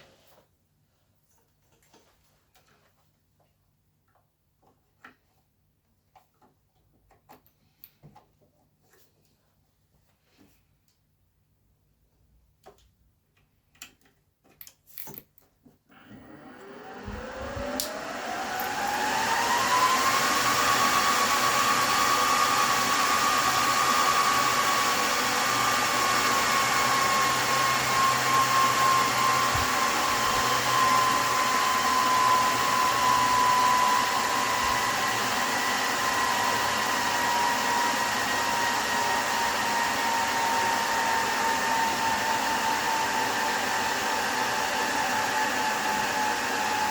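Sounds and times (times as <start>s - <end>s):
cooling fans whirring: 16.2s - 42.1s.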